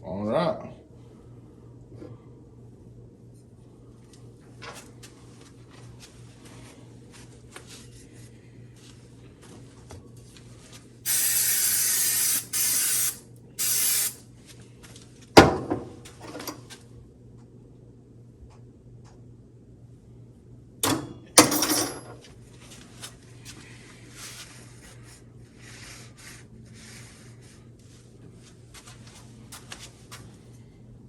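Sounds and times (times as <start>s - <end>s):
spraying hiss: 11.1s - 14.2s.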